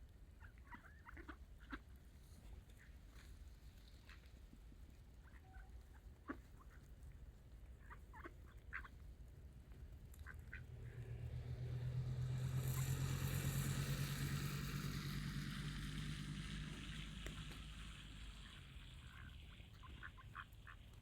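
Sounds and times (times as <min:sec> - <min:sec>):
low motor hum: 0:10.0 - 0:20.3
ducks quacking: 0:18.4 - 0:21.0.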